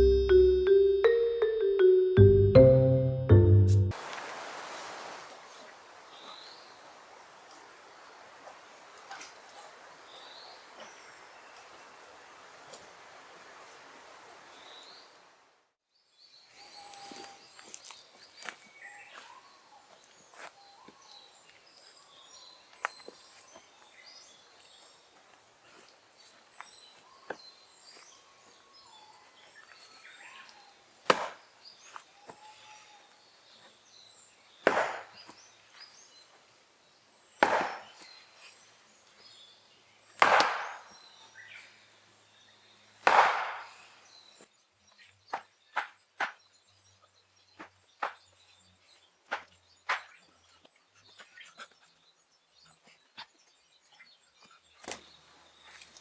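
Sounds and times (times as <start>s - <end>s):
firewood chopping strikes: 31.1s - 31.3s, 34.7s - 35.1s, 37.4s - 37.8s, 43.1s - 43.6s.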